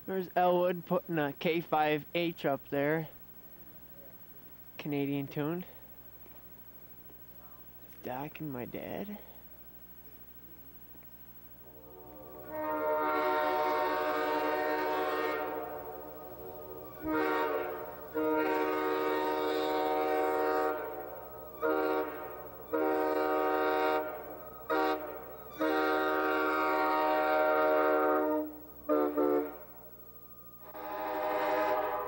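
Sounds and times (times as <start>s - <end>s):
train air horn blasts: 11.6s - 30.0s, 30.6s - 32.0s.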